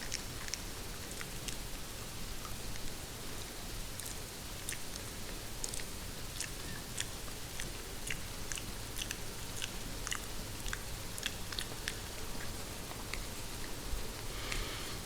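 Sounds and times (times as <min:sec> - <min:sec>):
hair being chewed and bitten: 0:05.6 - 0:13.2.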